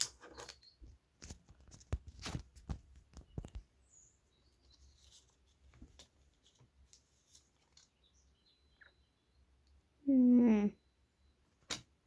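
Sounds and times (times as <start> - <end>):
paper rustling: 1.2 - 3.7, 4.6 - 8.0.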